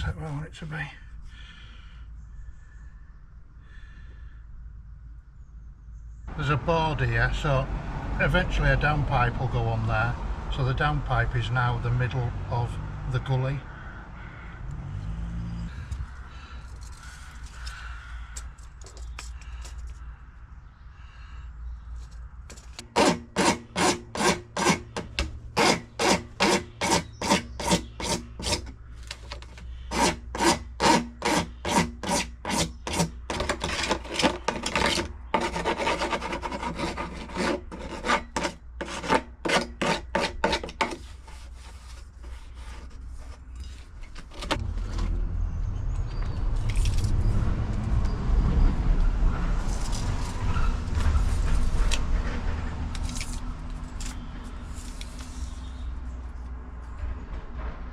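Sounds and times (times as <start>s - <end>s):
hand sawing: 22.5s - 44.6s.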